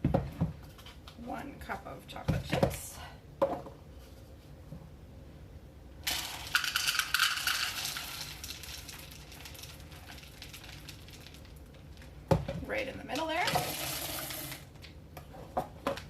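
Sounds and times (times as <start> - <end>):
chocolate chips pouring into pot: 6.0 - 12.2, 13.2 - 14.7.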